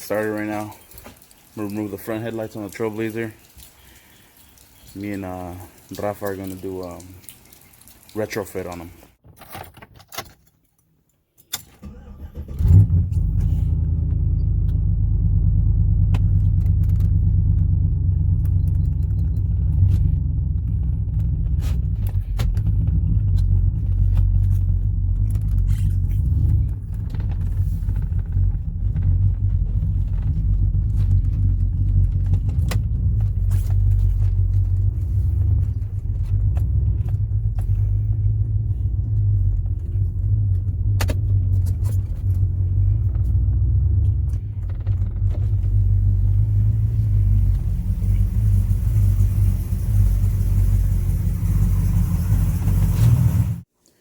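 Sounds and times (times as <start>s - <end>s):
engine starting: 11.5s - 14.0s
engine idling low rumble: 11.9s - 53.7s.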